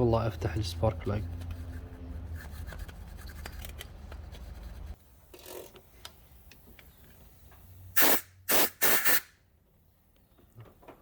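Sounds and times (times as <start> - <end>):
compressed air blasts: 7.9 - 9.4.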